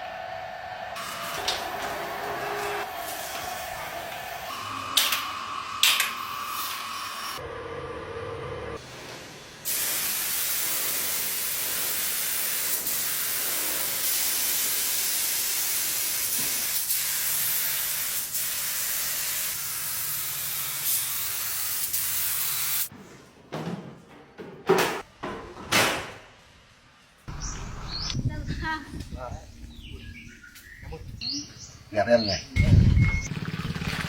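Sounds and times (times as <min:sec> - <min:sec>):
spray nozzle hissing: 0:09.7 - 0:22.9.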